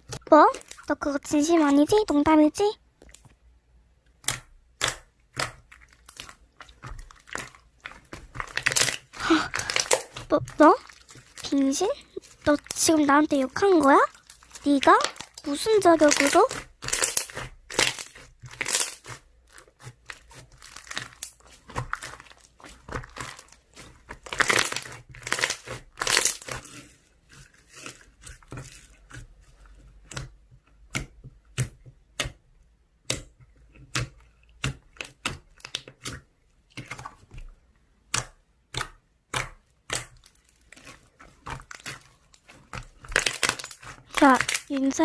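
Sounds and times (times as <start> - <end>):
slime crackling and popping: 0.0 - 3.3, 4.1 - 45.0.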